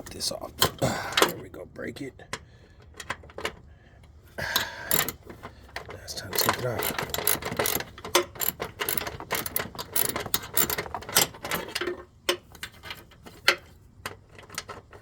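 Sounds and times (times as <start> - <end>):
hand ratchet clicking: 4.4 - 15.0.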